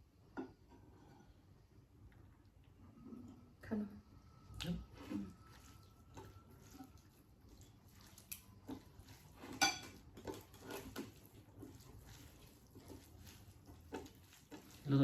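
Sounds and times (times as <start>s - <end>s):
plates and utensils clinking: 8.7s - 14.9s.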